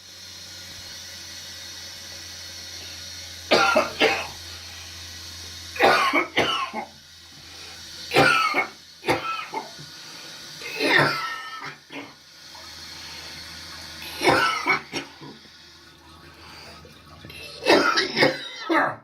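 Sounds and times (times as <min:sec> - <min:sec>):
person coughing: 0:03.5 - 0:04.4, 0:05.8 - 0:06.9, 0:08.1 - 0:09.7, 0:10.6 - 0:12.2, 0:14.2 - 0:15.2, 0:17.4 - 0:19.0.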